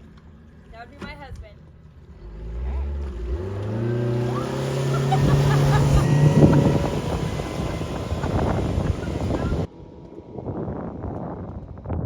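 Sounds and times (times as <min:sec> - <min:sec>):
outboard motor revving: 0:02.2 - 0:09.7
water rushing: 0:04.2 - 0:09.7.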